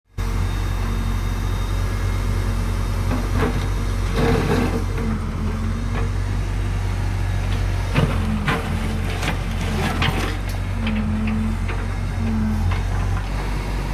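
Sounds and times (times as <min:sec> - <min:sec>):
diesel engine running: 0:00.1 - 0:13.9.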